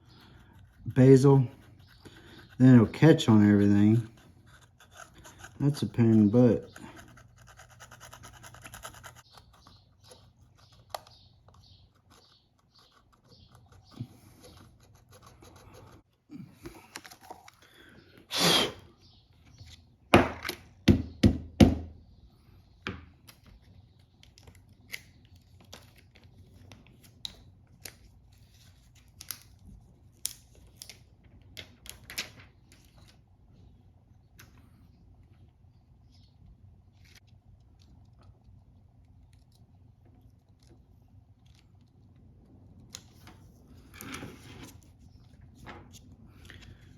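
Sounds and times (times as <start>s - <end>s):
small tool scraping adhesive: 4.1s - 16.1s.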